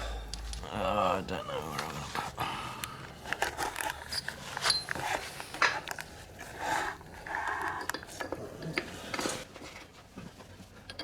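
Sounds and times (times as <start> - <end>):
metal parts and tools clicking: 3.3 - 6.1.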